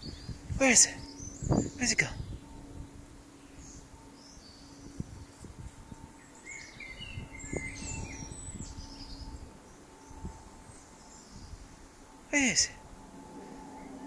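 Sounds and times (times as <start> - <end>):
bird chirping: 0.0 - 14.0.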